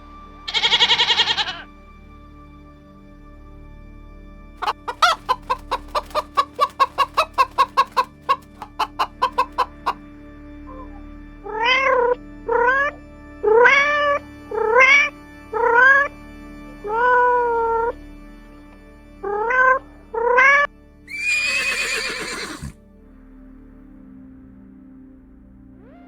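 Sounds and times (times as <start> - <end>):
soft background music: 0.0 - 26.0
cat meowing: 0.5 - 1.6
rapid clucking clicks: 4.6 - 10.0.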